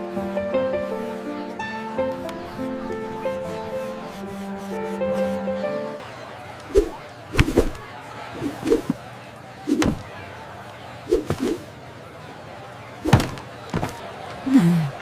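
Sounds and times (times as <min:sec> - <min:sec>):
short knocks and thumps: 0:09.7 - 0:10.0, 0:13.0 - 0:14.0.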